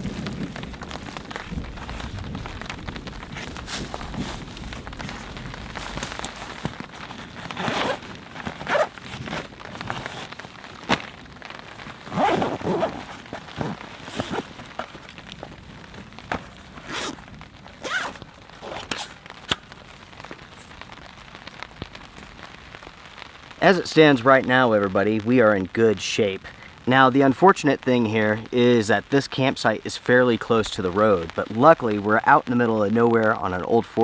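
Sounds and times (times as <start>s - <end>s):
rustling and handling gear: 0.0s - 20.8s.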